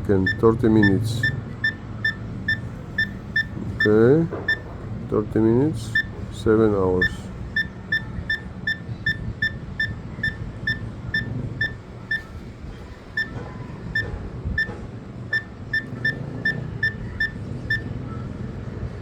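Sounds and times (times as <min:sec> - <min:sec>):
low steady hum: 0:00.0 - 0:19.0
keypad beeps: 0:00.1 - 0:04.7, 0:05.9 - 0:06.2, 0:07.0 - 0:17.9.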